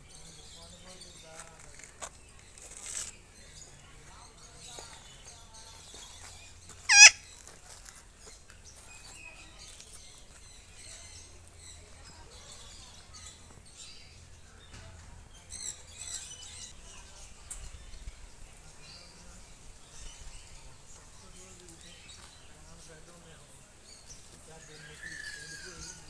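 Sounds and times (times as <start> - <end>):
parakeet harsh call: 6.9 - 7.3
faint bird chirps: 23.8 - 26.0.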